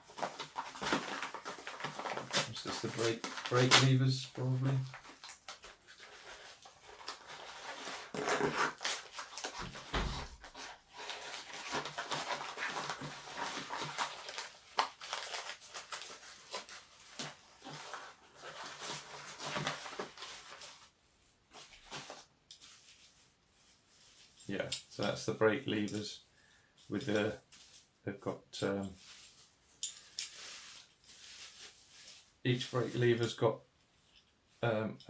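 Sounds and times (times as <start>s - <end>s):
plastic packaging crinkling: 0.0s - 21.0s, 28.7s - 33.4s.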